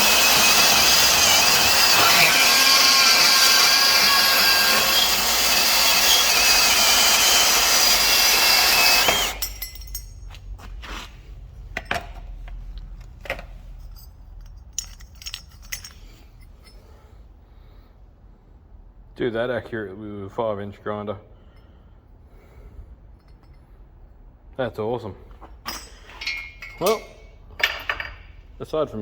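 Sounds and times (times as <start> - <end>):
band saw cutting steel tube: 0.0 - 9.6
light metallic clinks: 9.4 - 10.4, 13.6 - 17.1.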